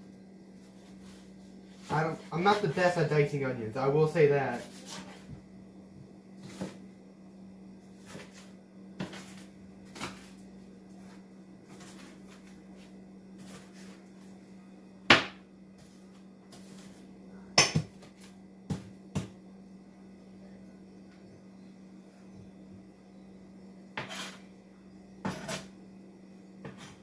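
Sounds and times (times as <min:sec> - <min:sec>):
knife chopping on cutting board: 0:15.1 - 0:15.4, 0:17.6 - 0:18.1, 0:24.0 - 0:24.4.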